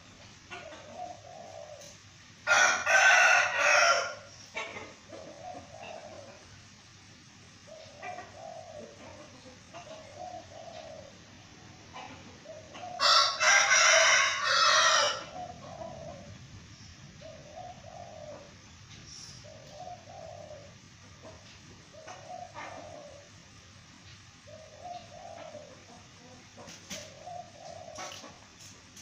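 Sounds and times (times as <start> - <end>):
rooster crowing: 2.4 - 4.3, 13.0 - 15.4.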